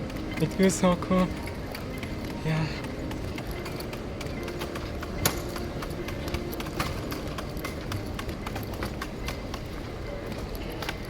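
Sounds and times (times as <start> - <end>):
airport hall noise: 0.0 - 11.0.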